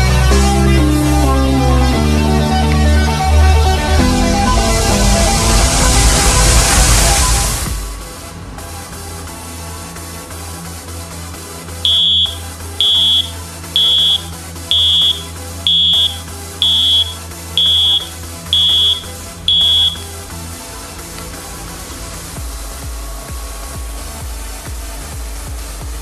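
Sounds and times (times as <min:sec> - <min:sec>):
background music: 0:00.0 - 0:26.0
high-pitched buzzer beeps: 0:11.9 - 0:20.1.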